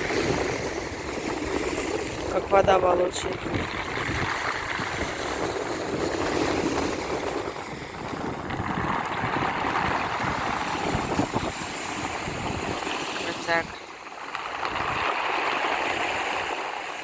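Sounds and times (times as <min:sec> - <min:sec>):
waves washing over pebbles: 0:00.0 - 0:17.0.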